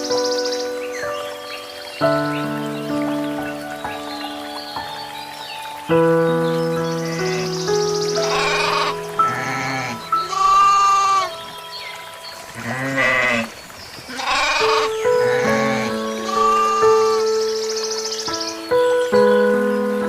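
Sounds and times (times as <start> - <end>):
soft background music: 0.0 - 13.5, 14.4 - 20.0
animal bleating: 8.3 - 11.3, 12.6 - 13.5, 14.1 - 17.1.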